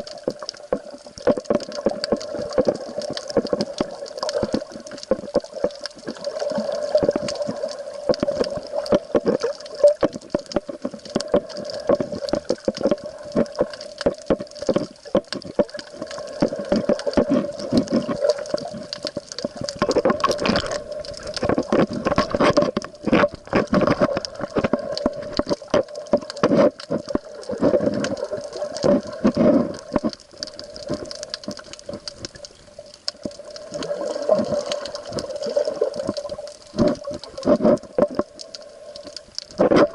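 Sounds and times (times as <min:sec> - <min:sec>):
small clicks and knocks: 0:00.0 - 0:39.9
water sloshing and gurgling: 0:00.0 - 0:39.9.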